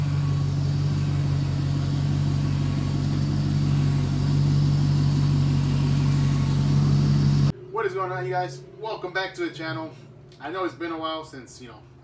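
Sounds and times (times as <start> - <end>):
pickup engine idling: 0.0 - 7.5.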